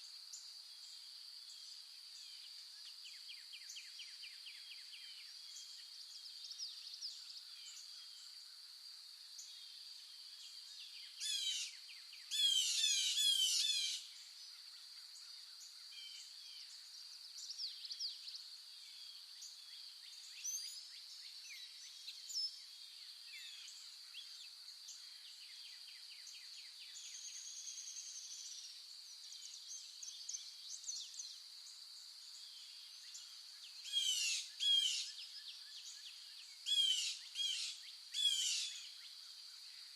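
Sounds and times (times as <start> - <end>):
birds chirping and singing: 12.3 - 14.0.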